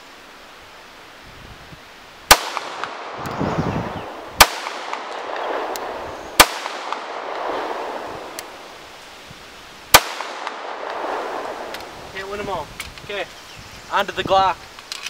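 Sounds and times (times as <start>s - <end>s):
pistol shots with echo: 2.3s - 3.2s, 4.4s - 8.4s, 9.9s - 11.7s.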